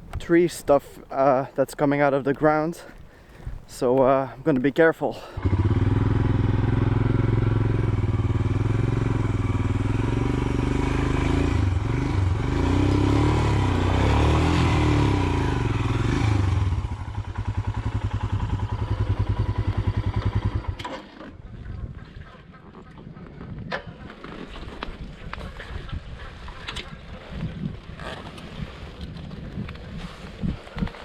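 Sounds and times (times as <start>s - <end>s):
motorcycle engine revving: 5.4s - 21.2s.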